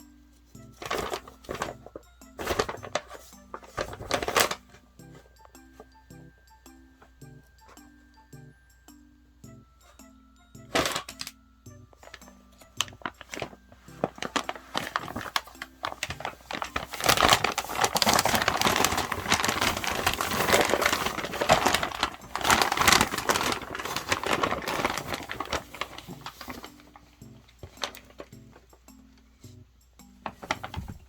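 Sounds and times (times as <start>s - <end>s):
paper bag rustling: 0.6s - 6.0s, 10.6s - 28.8s, 30.2s - 31.0s.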